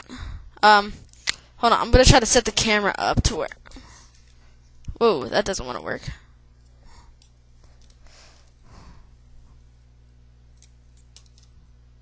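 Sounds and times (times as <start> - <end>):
steady low hum: 0.0 - 12.0
soft breaths: 3.6 - 4.8, 6.1 - 9.7.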